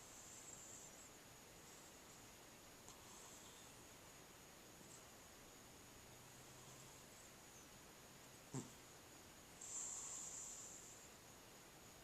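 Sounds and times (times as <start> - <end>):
cat snoring faintly: 0.0 - 1.1, 2.8 - 3.8, 6.3 - 7.2, 8.5 - 8.9, 9.6 - 11.2
cat snorting: 8.5 - 8.8
high hissing breath: 9.6 - 11.1.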